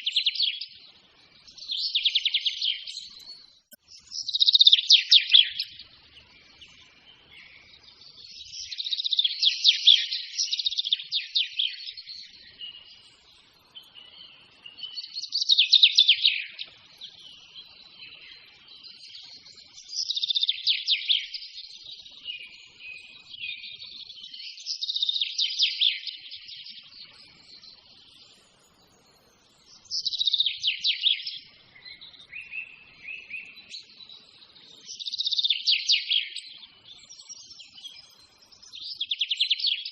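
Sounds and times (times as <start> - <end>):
soft bird chirps: 0.0 - 39.9
songbird trilling: 28.2 - 33.8.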